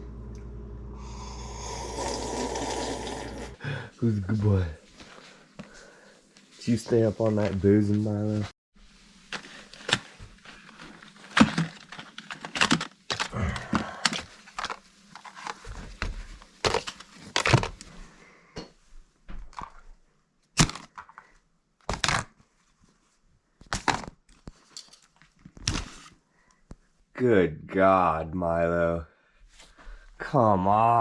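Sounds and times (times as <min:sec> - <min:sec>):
brittle material crunching: 0:09.3 - 0:15.8, 0:16.5 - 0:17.9, 0:20.6 - 0:21.2, 0:21.8 - 0:22.4.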